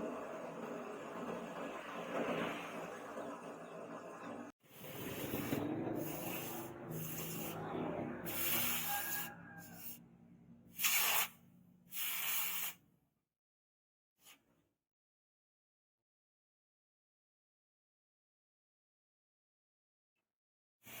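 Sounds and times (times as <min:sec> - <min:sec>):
sanding on steel blade: 0:04.8 - 0:10.0.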